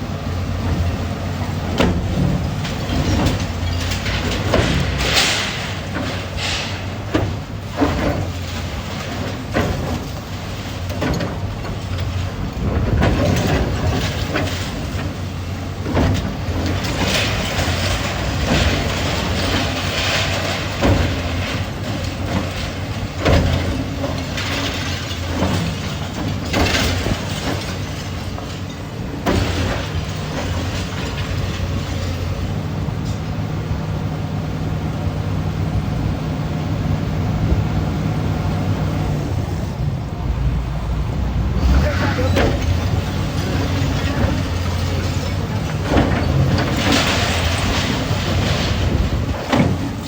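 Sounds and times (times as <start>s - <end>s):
demolition machinery running: 0.0s - 50.0s
metallic clanks and knocks: 41.9s - 50.0s.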